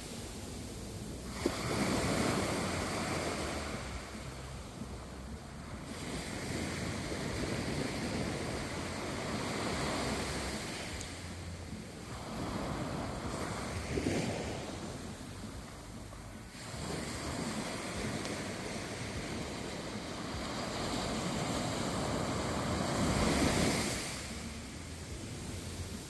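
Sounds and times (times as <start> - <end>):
ocean waves washing ashore: 0.0 - 26.0
wind on microphone: 0.0 - 26.0.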